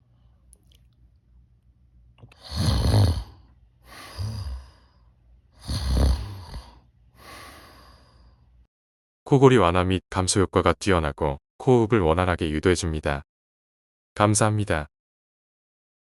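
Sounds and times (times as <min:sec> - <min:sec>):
person snoring: 0:02.3 - 0:05.0, 0:05.6 - 0:08.3.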